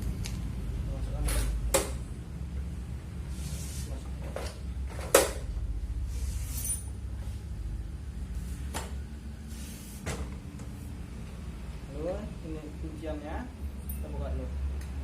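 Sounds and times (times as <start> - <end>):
metal sliding scrapes: 6.1 - 7.4.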